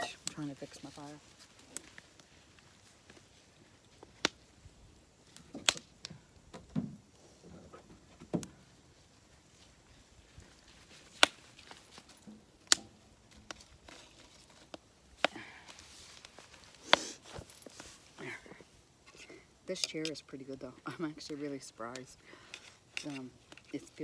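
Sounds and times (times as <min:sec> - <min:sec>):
firewood cracks and knocks: 0:05.3 - 0:07.0, 0:11.1 - 0:15.4.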